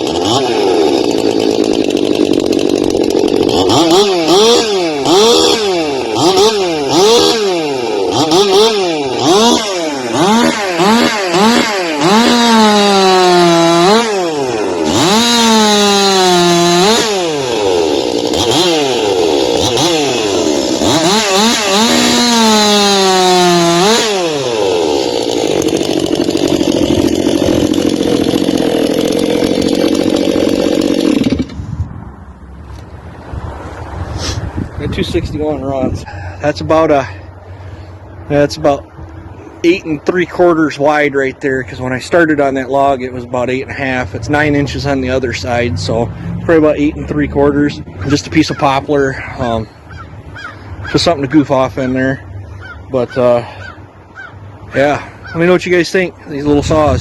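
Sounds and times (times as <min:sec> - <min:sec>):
chainsaw cutting log: 0:00.0 - 0:31.7, 0:53.6 - 0:57.0.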